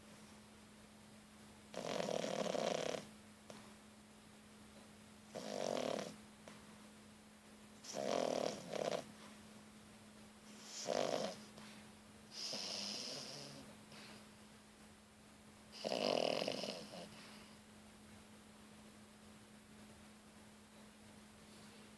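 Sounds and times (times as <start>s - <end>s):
puppy snoring: 1.7s - 3.2s, 5.3s - 6.2s, 7.8s - 9.2s, 10.5s - 11.6s, 12.3s - 14.2s, 15.7s - 17.6s.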